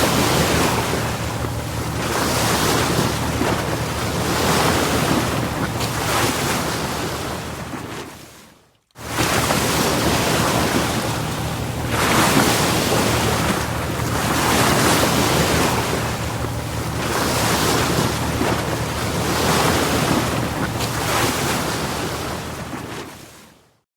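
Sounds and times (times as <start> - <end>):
ocean waves washing in and out: 0.0 - 23.8.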